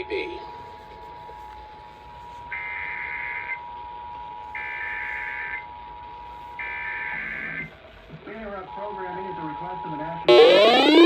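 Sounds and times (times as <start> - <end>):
high electronic beep: 10.3 - 11.0
two-tone alert signal: 10.3 - 11.0.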